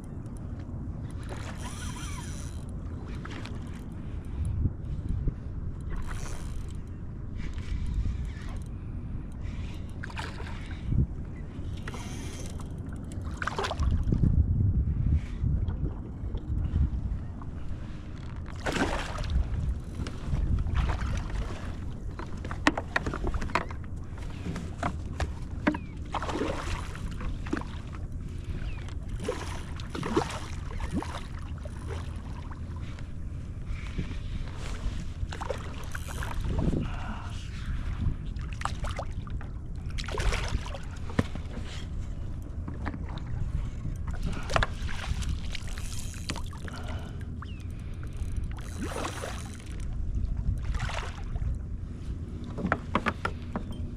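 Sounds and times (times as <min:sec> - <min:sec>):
water lapping and splashing: 0:01.1 - 0:14.3, 0:15.0 - 0:53.9
small knocks: 0:52.5 - 0:53.8.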